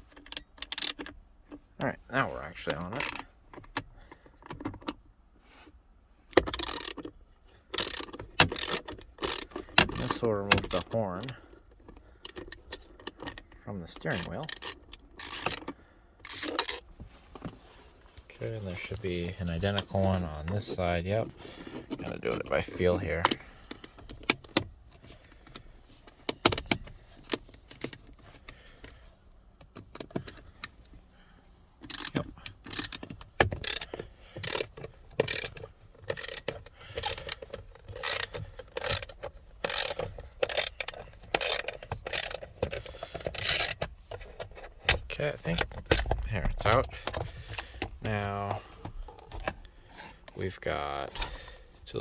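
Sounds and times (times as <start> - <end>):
hand ratchet ratcheting: 0.1 - 1.2, 2.7 - 3.2, 6.4 - 7.1, 7.7 - 11.5, 12.2 - 13.4, 14.0 - 16.8, 31.8 - 44.5.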